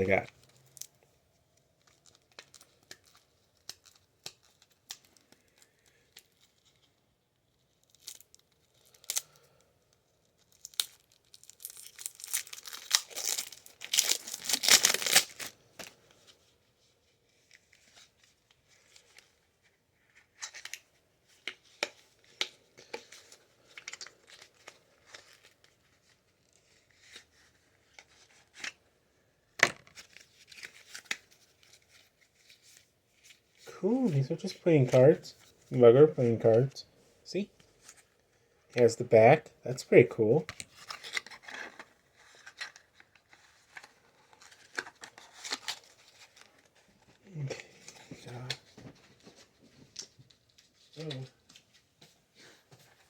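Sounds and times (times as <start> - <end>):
card pack wrapping tearing: 10.6 - 15.6, 40.7 - 46.7.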